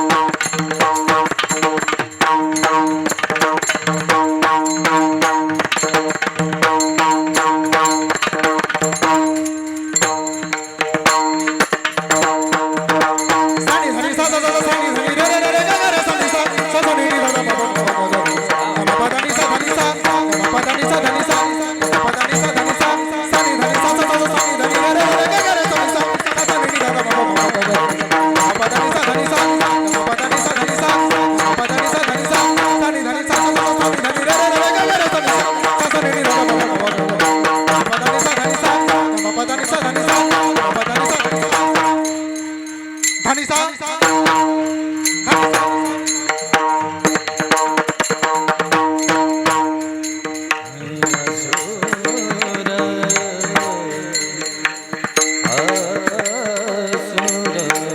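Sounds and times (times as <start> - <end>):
jingling percussion: 0.0 - 57.9
wavering melody: 6.7 - 57.9
hand drum playing: 45.3 - 54.0.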